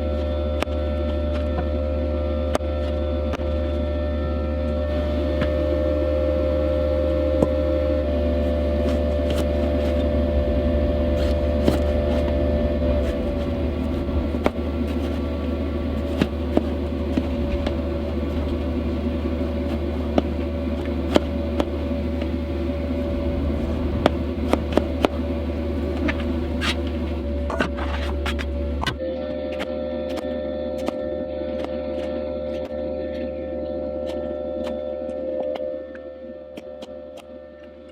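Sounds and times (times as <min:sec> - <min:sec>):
diesel heater humming: 0:00.0 - 0:37.8.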